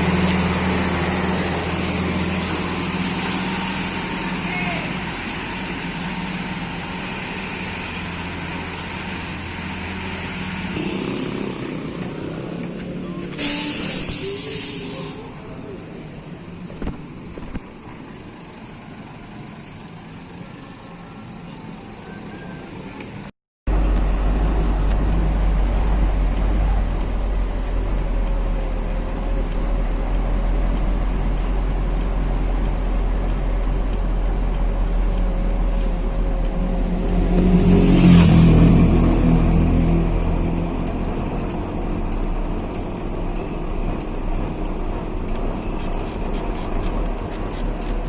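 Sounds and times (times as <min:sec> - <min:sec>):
heavy truck engine rumble: 0:00.0 - 0:48.0
road noise: 0:00.0 - 0:48.0
hiss: 0:13.2 - 0:15.4.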